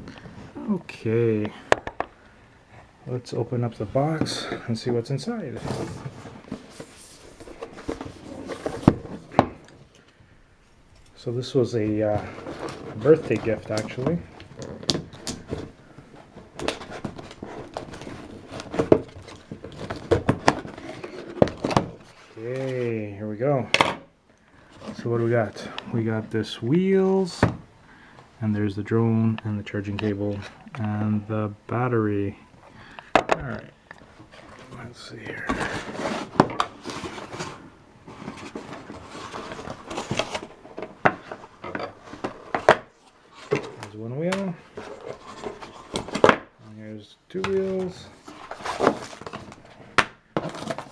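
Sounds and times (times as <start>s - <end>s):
cardboard box and packaging handled: 3.0s - 10.0s, 11.0s - 24.0s, 24.6s - 27.7s, 33.1s - 46.7s, 47.3s - 50.9s.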